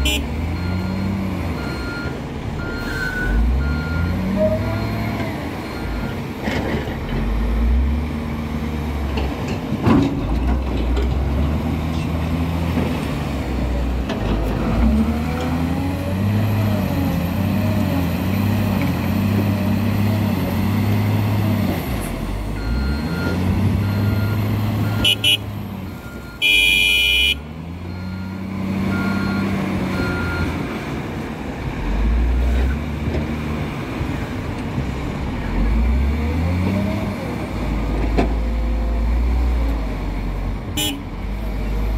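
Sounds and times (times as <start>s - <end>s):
reversing alarm beeping: 0.0s - 6.2s, 22.5s - 30.6s
wheel loader diesel engine working: 0.0s - 41.9s.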